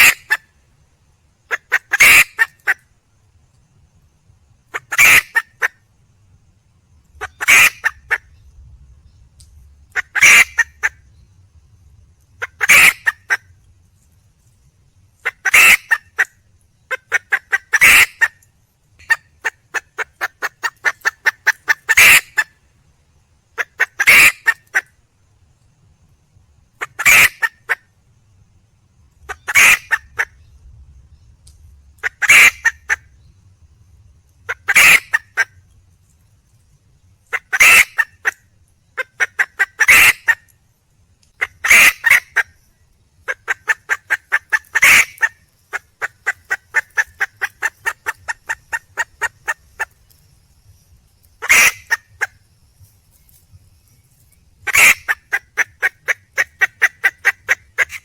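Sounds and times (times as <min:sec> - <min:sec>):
hen calling: 0:00.0 - 0:00.4, 0:01.5 - 0:02.8, 0:04.7 - 0:05.7, 0:07.2 - 0:08.3, 0:09.9 - 0:11.0, 0:12.4 - 0:13.4, 0:15.2 - 0:16.3, 0:16.9 - 0:18.4, 0:19.0 - 0:22.5, 0:23.6 - 0:24.9, 0:26.8 - 0:27.8, 0:29.3 - 0:30.4, 0:32.0 - 0:33.0, 0:34.5 - 0:35.6, 0:37.3 - 0:38.4, 0:39.0 - 0:40.5, 0:41.4 - 0:42.5, 0:43.3 - 0:50.0, 0:51.4 - 0:52.4, 0:54.6 - 0:58.0
hen clucking: 0:01.5 - 0:02.8, 0:04.7 - 0:05.7, 0:07.2 - 0:08.3, 0:09.9 - 0:11.0, 0:12.4 - 0:13.4, 0:15.2 - 0:16.3, 0:16.9 - 0:18.4, 0:19.0 - 0:22.5, 0:23.6 - 0:24.9, 0:29.2 - 0:30.4, 0:32.0 - 0:33.0, 0:34.5 - 0:35.6, 0:37.3 - 0:38.4, 0:39.0 - 0:40.4, 0:41.4 - 0:42.5, 0:43.3 - 0:50.0, 0:51.4 - 0:52.4, 0:54.6 - 0:58.0.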